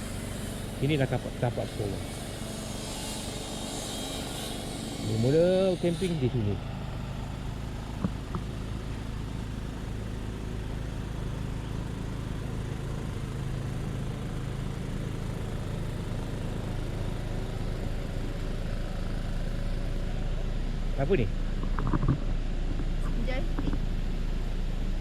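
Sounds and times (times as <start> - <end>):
car engine and road noise: 4.9 - 25.0.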